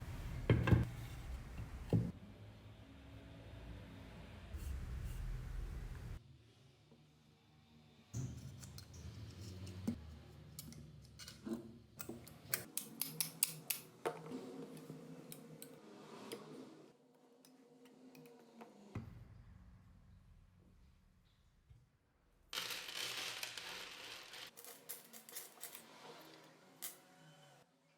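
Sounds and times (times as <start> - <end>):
hand tool clicking and snipping: 12.0 - 13.9.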